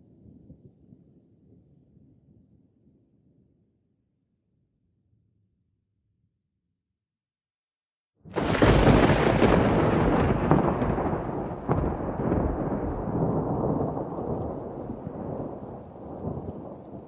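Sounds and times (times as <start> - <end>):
sharp thunder crack: 8.3 - 17.0
thunder rumbling: 8.3 - 17.0.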